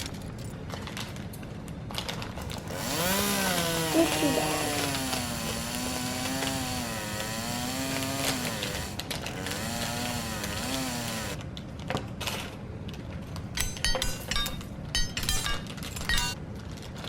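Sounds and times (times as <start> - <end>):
plastic pieces clicking and rattling: 0.0 - 6.6, 8.0 - 9.6
drone buzzing: 2.7 - 11.4.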